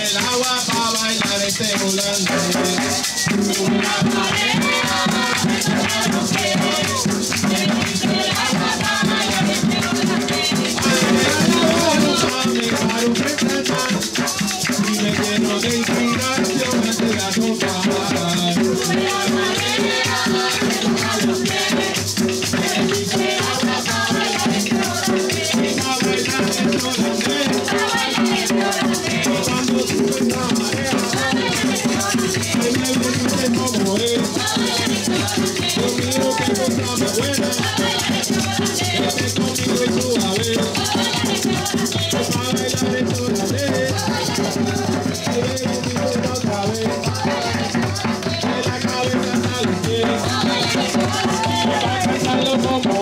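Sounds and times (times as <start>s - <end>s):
drums: 0.0s - 53.0s
maraca rattling: 0.0s - 53.0s
person singing: 10.8s - 19.4s, 25.5s - 53.0s.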